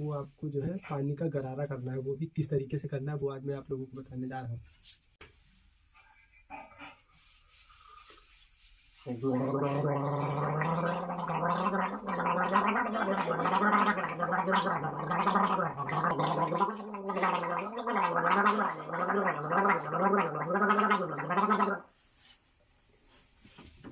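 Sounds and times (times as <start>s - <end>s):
man gargling with a pitched tone: 9.1s - 21.9s.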